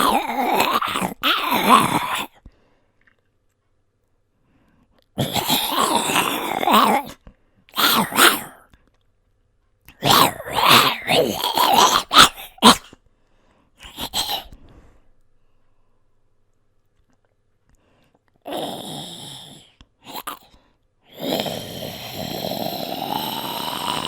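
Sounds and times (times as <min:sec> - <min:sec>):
man making zombie growls: 0:00.0 - 0:02.4, 0:05.2 - 0:08.7, 0:09.9 - 0:13.0, 0:13.8 - 0:14.6, 0:18.4 - 0:20.5, 0:21.1 - 0:24.0.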